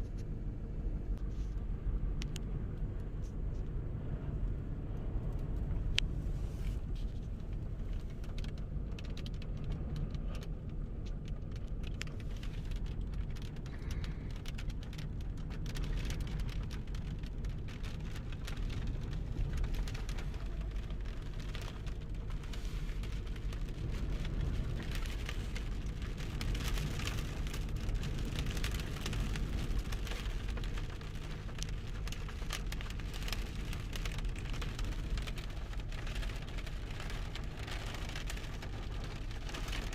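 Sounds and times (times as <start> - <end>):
crackling patter of small hits: 0.0 - 39.9.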